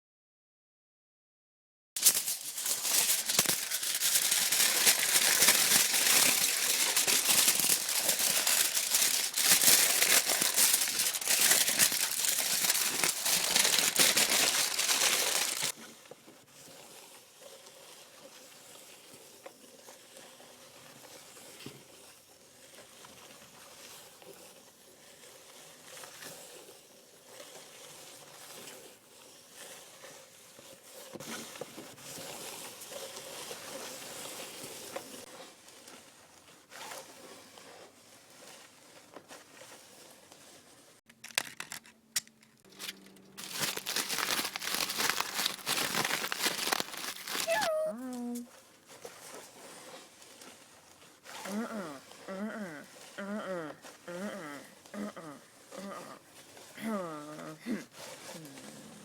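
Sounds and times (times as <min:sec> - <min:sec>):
aluminium foil crinkling: 0:02.0 - 0:15.8, 0:41.1 - 0:48.5.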